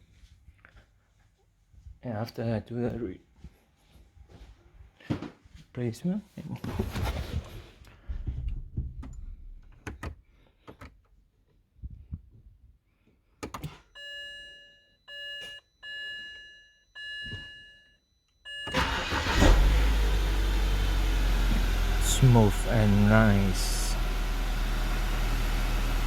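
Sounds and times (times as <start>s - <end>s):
car engine starting and idling: 18.6s - 26.0s.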